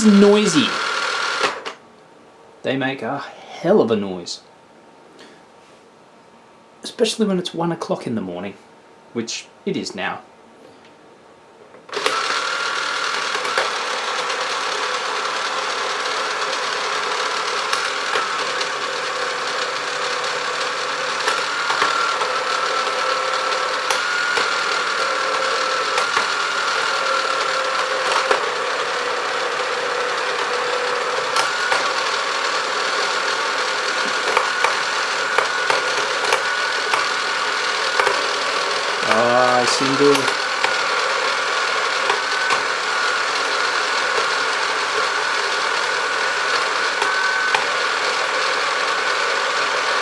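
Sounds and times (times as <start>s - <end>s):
toy robot arm motor whirring: 0.0s - 1.8s, 11.9s - 50.0s
sharp clicks: 1.4s - 1.8s, 21.2s - 28.5s, 30.2s - 45.2s, 46.4s - 47.8s.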